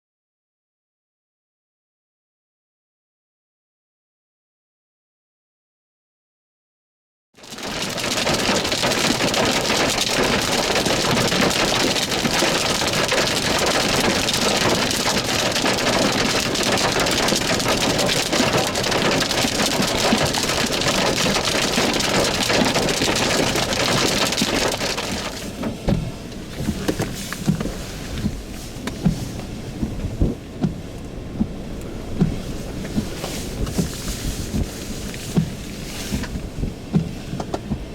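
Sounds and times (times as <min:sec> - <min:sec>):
heavy rain hissing: 0:07.4 - 0:37.5.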